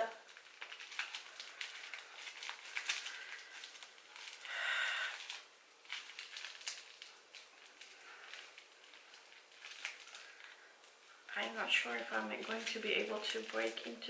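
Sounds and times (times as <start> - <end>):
packaging rustling and crinkling: 0.0 - 14.0.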